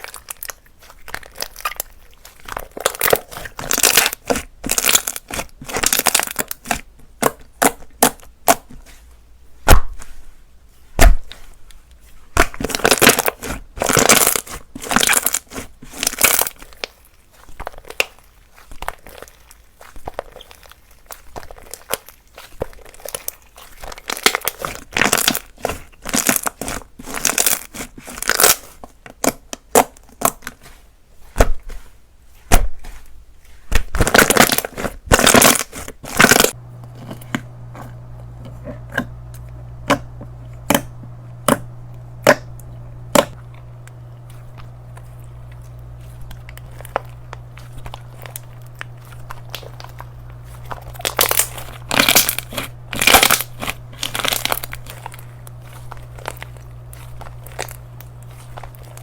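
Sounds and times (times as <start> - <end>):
slime crackling and crunching: 0.0 - 8.7, 12.3 - 30.7, 33.6 - 59.0
low steady hum: 36.1 - 59.0.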